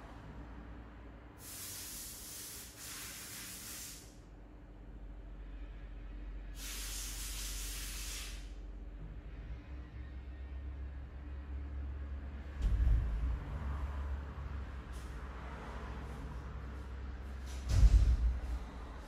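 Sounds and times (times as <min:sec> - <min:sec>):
compressed air hissing blasts: 0:01.4 - 0:04.2, 0:06.6 - 0:08.6.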